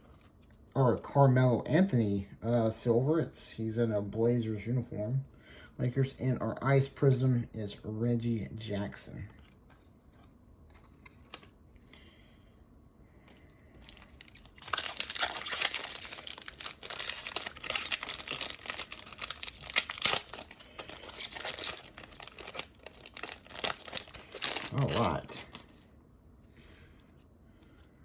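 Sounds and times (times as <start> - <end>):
foil wrapper tearing and crinkling: 13.8 - 25.8.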